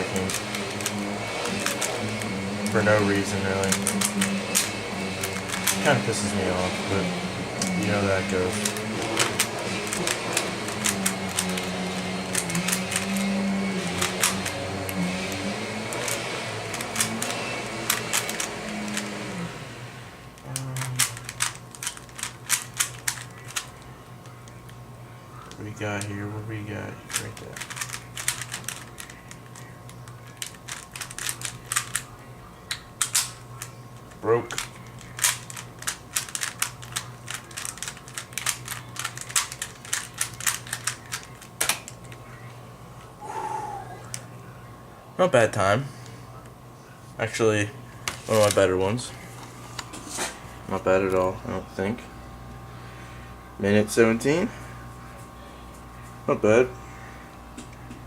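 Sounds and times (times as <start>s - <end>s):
vacuum cleaner humming: 0.0s - 30.7s, 36.7s - 44.7s, 47.1s - 58.0s
plastic puzzle cube clicking: 0.2s - 2.0s, 3.7s - 5.8s, 12.3s - 13.3s, 15.9s - 19.1s, 20.8s - 23.7s, 27.1s - 29.4s, 34.5s - 42.0s
low hum: 27.6s - 45.2s.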